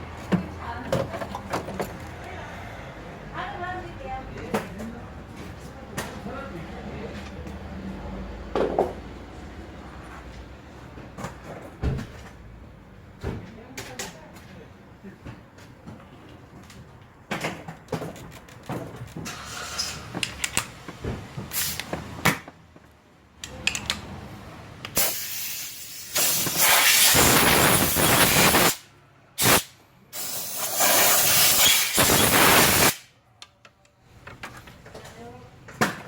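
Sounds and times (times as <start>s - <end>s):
loud air hissing: 25.0s - 28.8s, 29.4s - 33.1s.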